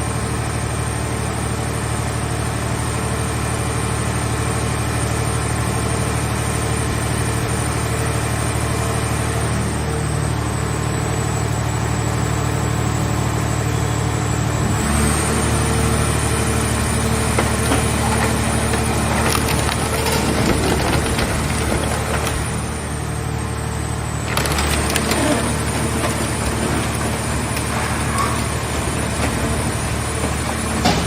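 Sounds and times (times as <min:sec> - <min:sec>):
baler engine running: 0:00.1 - 0:31.0.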